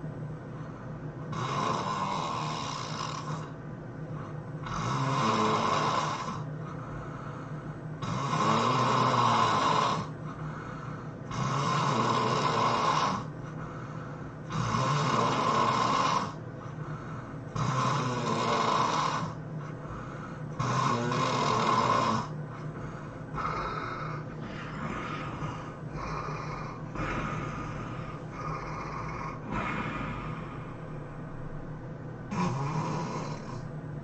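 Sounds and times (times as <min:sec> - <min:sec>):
quiet breathing: 0:00.0 - 0:05.1, 0:06.0 - 0:33.8
person snoring: 0:01.3 - 0:03.6, 0:04.6 - 0:31.0, 0:32.3 - 0:33.7.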